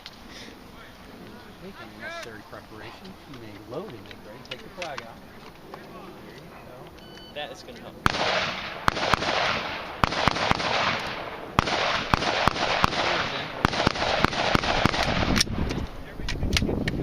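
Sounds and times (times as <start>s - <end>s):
rifle shots: 8.0s - 15.9s.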